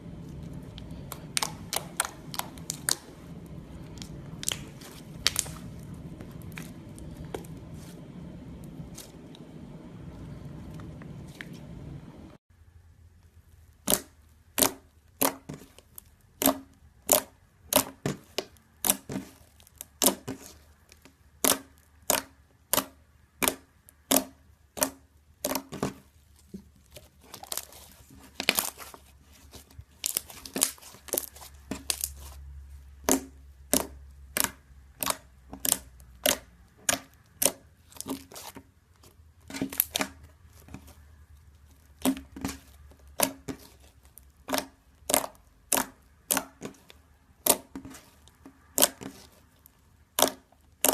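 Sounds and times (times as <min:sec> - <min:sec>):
slime crackling pops: 0:00.8 - 0:03.2, 0:03.9 - 0:05.7, 0:50.1 - 0:50.9.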